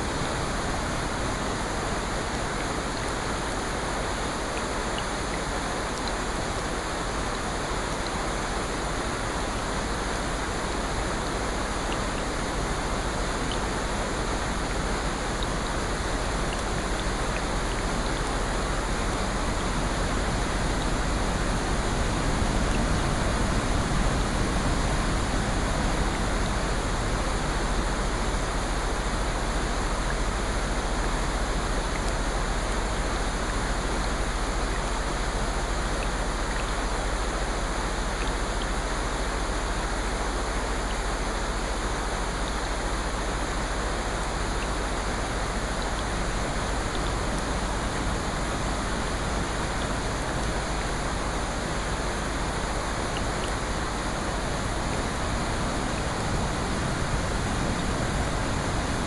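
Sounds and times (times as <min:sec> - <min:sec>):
water rushing: 0:00.0 - 0:59.0.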